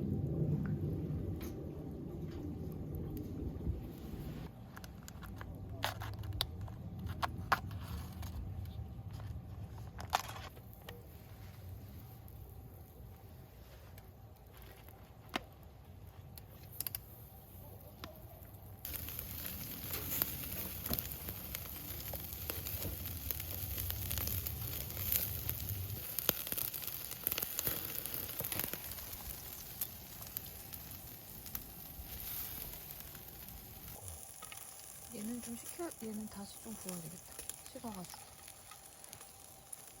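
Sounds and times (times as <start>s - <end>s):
small crackling pops: 13.8s - 40.0s
meat sizzling on a grill: 18.8s - 40.0s.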